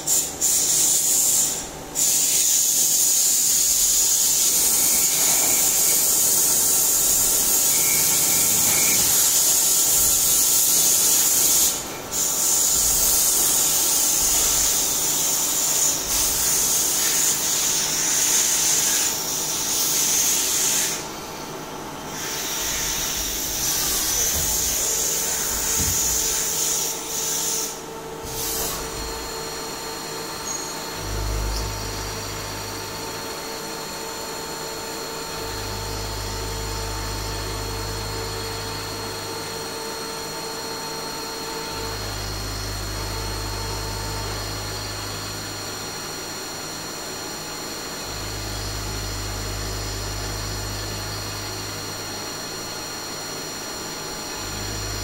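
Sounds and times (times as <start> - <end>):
lathe high whine: 0.0 - 55.0
low hum: 30.9 - 33.3.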